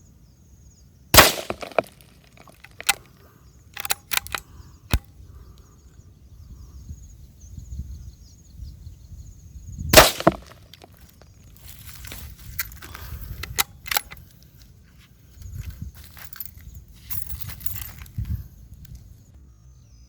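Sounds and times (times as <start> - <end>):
rifle shot: 1.2 - 1.9, 9.9 - 10.6.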